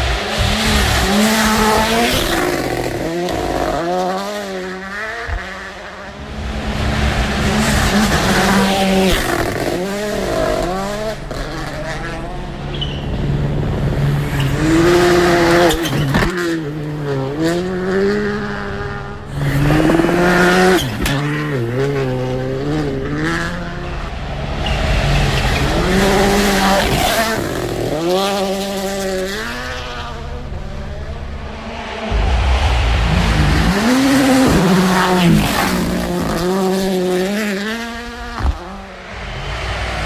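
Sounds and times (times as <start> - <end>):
race car engine accelerating: 0.0 - 40.0
low rush: 6.1 - 9.9, 24.0 - 26.5, 30.5 - 36.3, 38.8 - 40.0.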